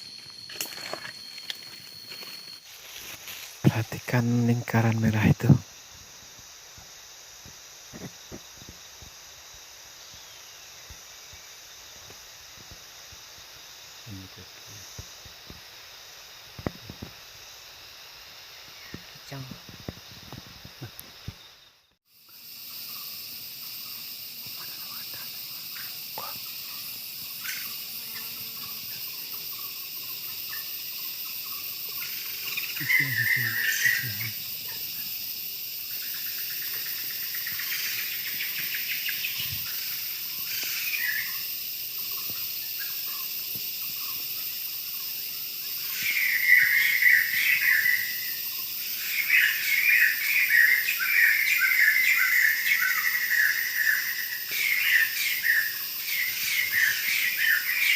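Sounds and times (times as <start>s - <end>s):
insects buzzing drone: 0.0s - 57.9s
rapid chirping trills: 22.5s - 57.9s.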